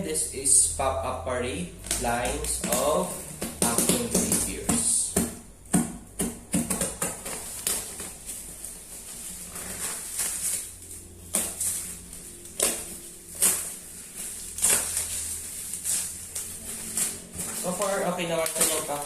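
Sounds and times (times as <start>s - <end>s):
plastic packaging crinkling: 6.7s - 19.0s.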